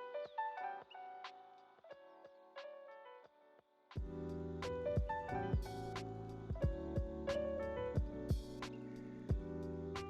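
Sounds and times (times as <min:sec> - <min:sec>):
drum hits: 0:05.0 - 0:07.2, 0:08.0 - 0:08.7.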